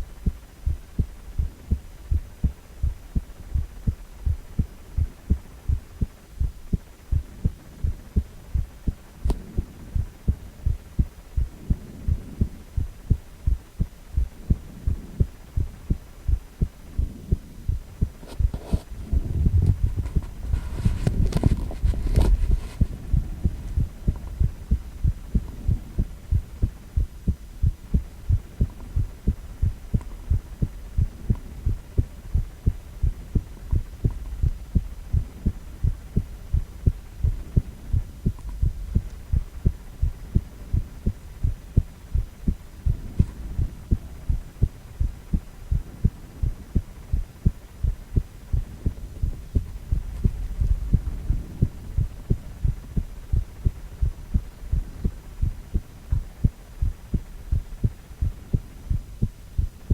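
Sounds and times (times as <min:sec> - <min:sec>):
low heartbeat thumps: 0:00.0 - 0:59.9
low steady hum: 0:00.0 - 0:59.9.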